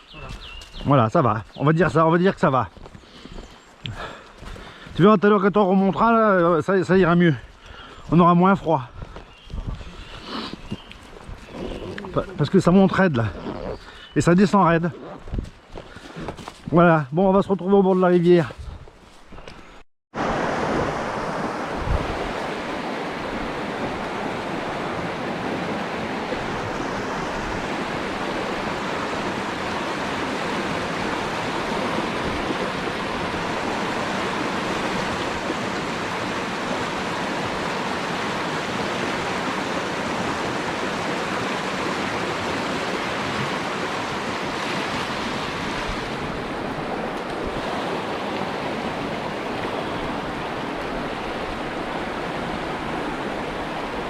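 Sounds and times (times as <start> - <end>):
river water rushing: 20.2 - 54.0.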